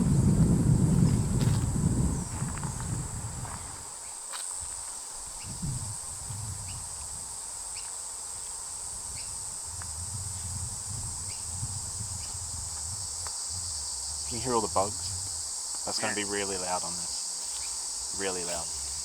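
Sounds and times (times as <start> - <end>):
insects chirring: 0.0 - 19.0
low rumble: 9.6 - 15.6.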